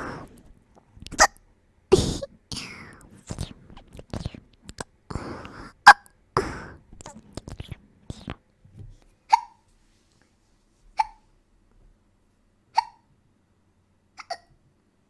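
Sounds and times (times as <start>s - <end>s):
breathy sounds: 0.0s - 8.4s
woman hiccuping: 1.1s - 2.8s, 5.5s - 7.2s, 11.0s - 11.2s, 12.8s - 13.0s, 14.2s - 14.5s.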